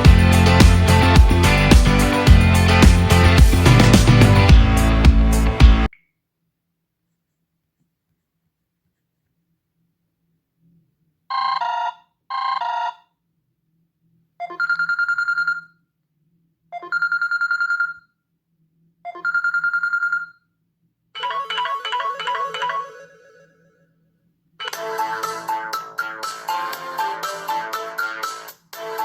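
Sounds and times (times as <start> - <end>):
phone trilling rings: 11.3 - 13.0, 14.4 - 15.7, 16.8 - 18.0, 19.1 - 20.4, 21.2 - 23.6
short ringtone melody: 21.2 - 23.4
phone chiming bursts: 21.2 - 23.5.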